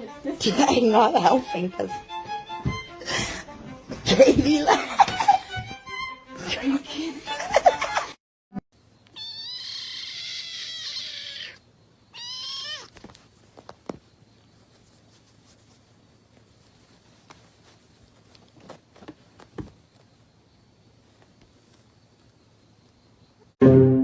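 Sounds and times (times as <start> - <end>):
cat meowing: 9.1 - 13.0.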